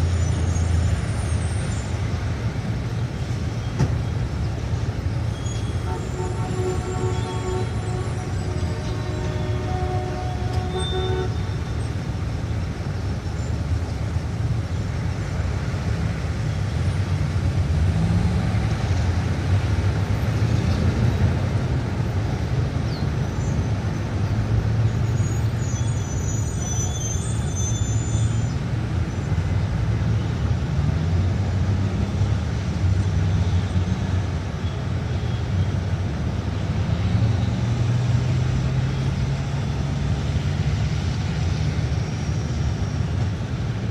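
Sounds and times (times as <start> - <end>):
traffic engines rumbling: 0.0 - 43.9
high-pitched squeals: 5.3 - 12.3.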